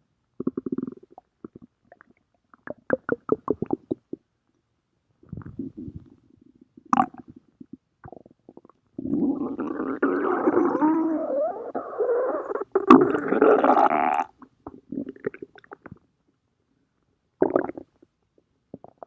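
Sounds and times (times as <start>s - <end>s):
stomach growling: 5.2s - 6.2s.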